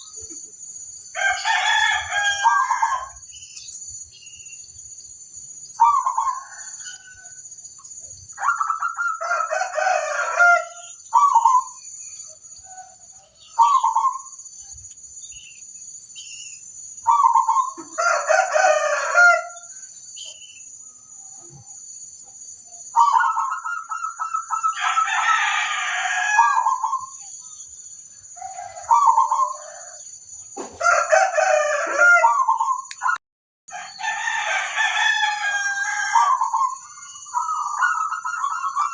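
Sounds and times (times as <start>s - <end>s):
doves cooing: 8.4s - 11.8s, 17.1s - 19.6s, 22.9s - 27.2s, 28.4s - 30.0s, 30.8s - 33.2s, 35.0s - 38.9s.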